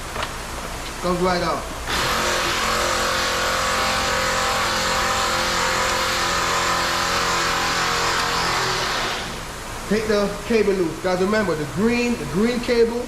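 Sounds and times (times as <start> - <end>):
motor humming: 1.9 - 9.5.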